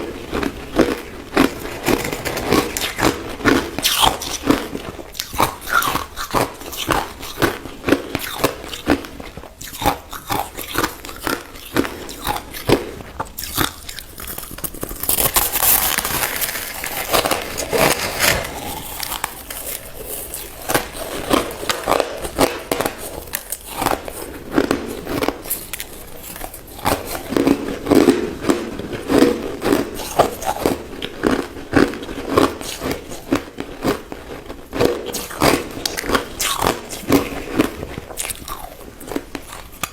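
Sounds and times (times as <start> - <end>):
crushed ice being chewed: 0.0 - 39.9.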